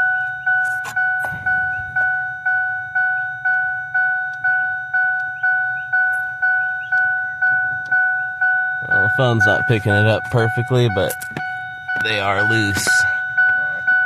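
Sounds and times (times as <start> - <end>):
two-tone warning chime dinging: 0.0 - 14.0.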